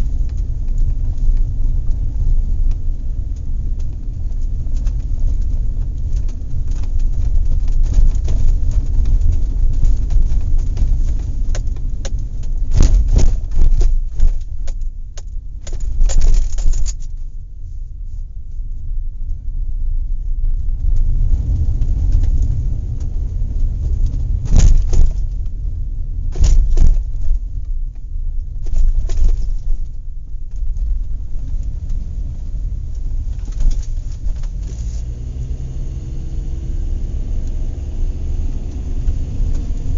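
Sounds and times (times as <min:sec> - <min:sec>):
road and engine rumble: 0:00.0 - 0:39.9.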